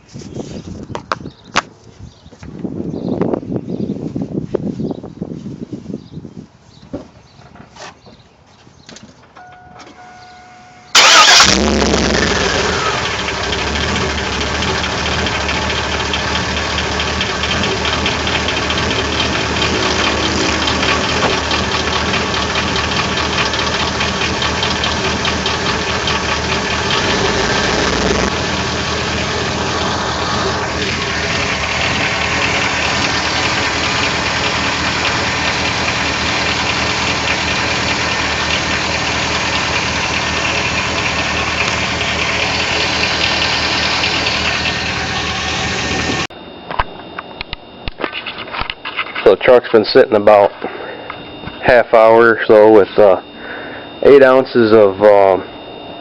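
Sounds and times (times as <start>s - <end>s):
engine idling with rapid knock: 11.0s - 46.3s.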